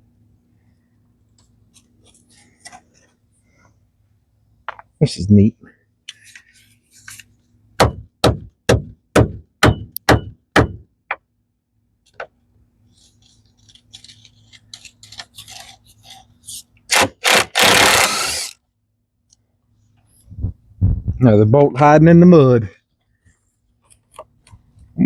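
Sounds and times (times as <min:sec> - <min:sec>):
sharp knocks on metal plate: 0:07.8 - 0:11.2.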